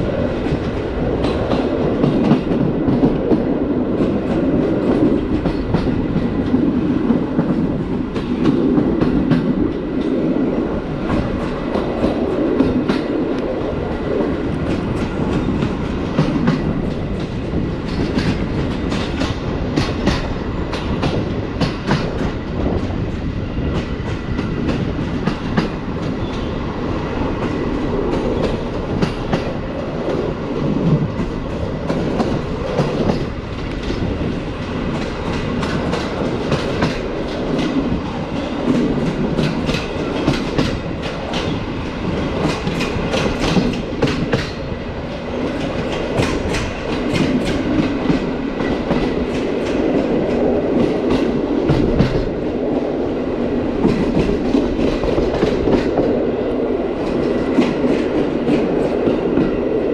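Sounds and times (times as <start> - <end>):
train rumble: 0.0 - 59.9
train wheels clacking over rail joints: 0.3 - 10.2, 14.6 - 26.6, 27.3 - 30.3, 31.0 - 52.4.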